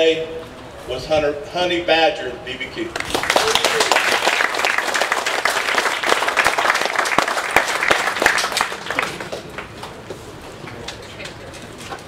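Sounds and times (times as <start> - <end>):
crowd cheering: 2.9 - 9.7
crowd applauding: 2.9 - 9.9.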